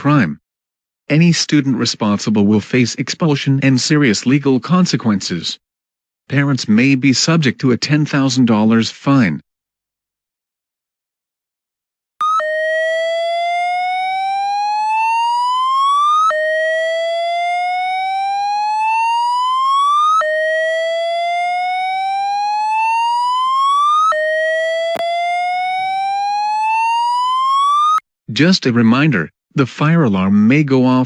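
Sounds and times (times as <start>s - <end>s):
fire alarm whoop tone: 12.2s - 28.0s.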